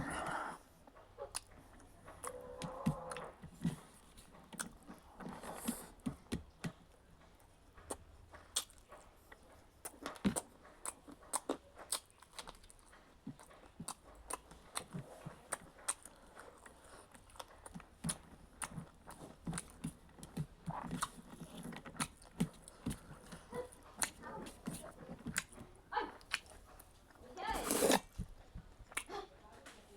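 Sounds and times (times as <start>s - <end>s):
person chewing food: 0.0s - 29.3s
wet mouth clicks and smacks: 7.9s - 8.8s, 26.2s - 26.7s.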